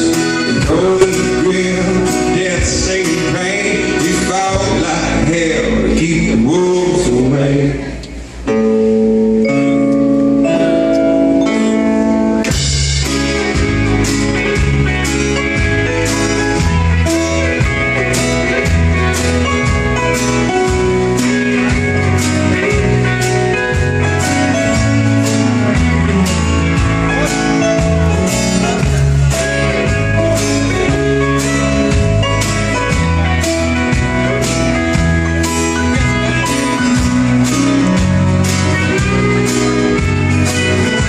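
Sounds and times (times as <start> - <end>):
blues rock band playing: 0.0 - 41.0.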